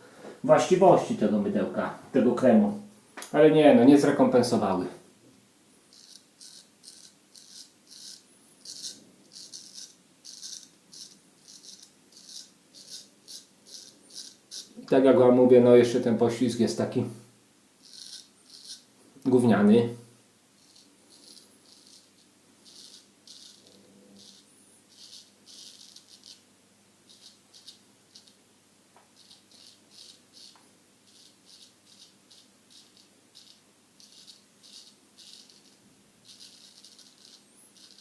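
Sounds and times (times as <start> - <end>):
razor scraping beard stubble: 5.9 - 14.9, 17.8 - 19.3, 20.6 - 26.4, 27.1 - 28.4, 29.2 - 38.0.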